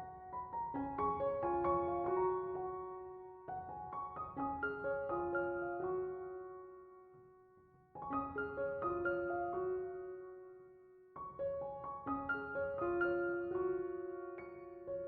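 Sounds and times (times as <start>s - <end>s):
piano music: 0.0s - 7.2s, 8.0s - 15.0s.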